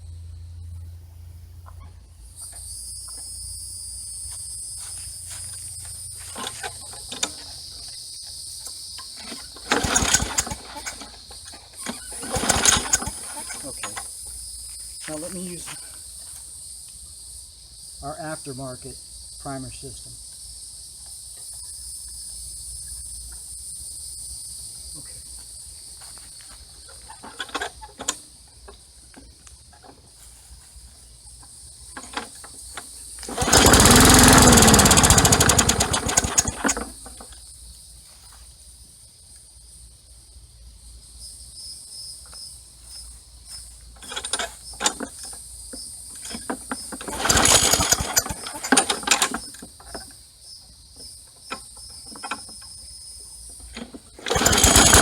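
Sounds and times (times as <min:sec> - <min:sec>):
crickets chirping: 0:00.0 - 0:55.0
lawn mower engine running: 0:04.2 - 0:08.0, 0:08.6 - 0:14.2, 0:27.0 - 0:28.2, 0:31.9 - 0:37.3, 0:44.0 - 0:45.4, 0:46.1 - 0:50.0, 0:53.6 - 0:55.0.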